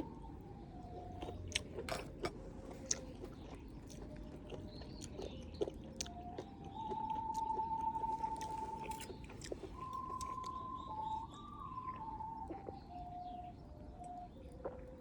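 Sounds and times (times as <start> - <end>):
person eating crunchily: 1.2 - 10.5
recorders playing slow melody: 6.2 - 14.7.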